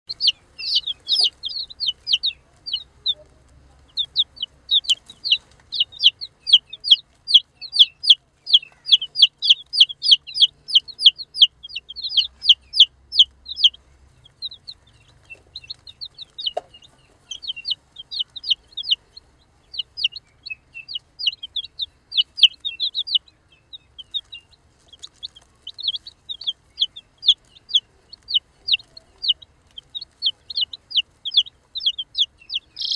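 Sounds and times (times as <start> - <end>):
baby chicks peeping: 0.0 - 32.9.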